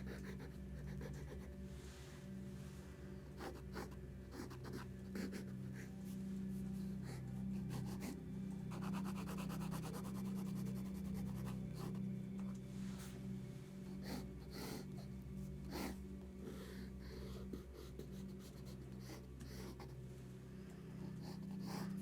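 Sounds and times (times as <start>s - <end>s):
pencil scratching on paper: 0.0s - 1.6s, 3.4s - 5.9s, 7.5s - 12.1s, 17.2s - 20.0s, 21.1s - 22.0s
low electrical hum: 0.0s - 22.0s.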